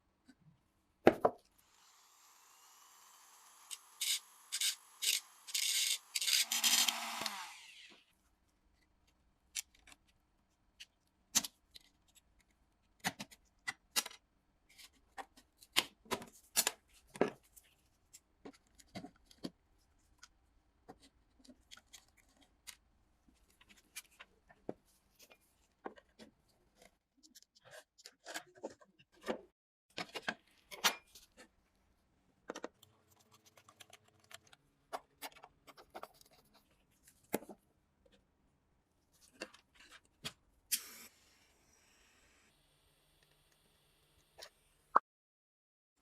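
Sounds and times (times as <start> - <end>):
hand tools clicking and scraping: 3.6 - 7.6.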